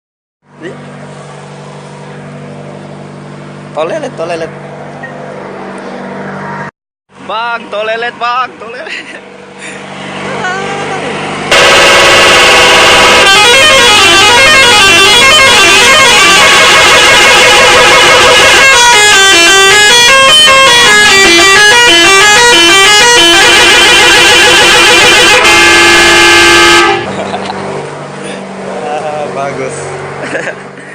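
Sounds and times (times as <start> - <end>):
multi-tone musical bus horn: 10.6 - 27.2.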